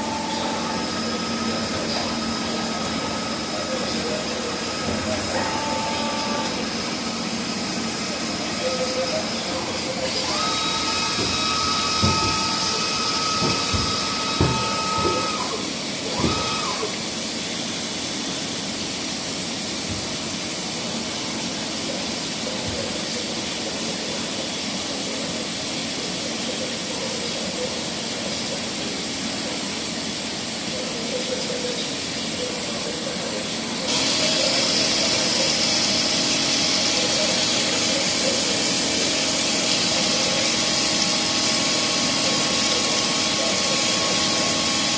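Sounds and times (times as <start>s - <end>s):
boring mill humming: 0.0s - 25.2s, 30.7s - 44.9s
machine knocks: 11.1s - 15.3s.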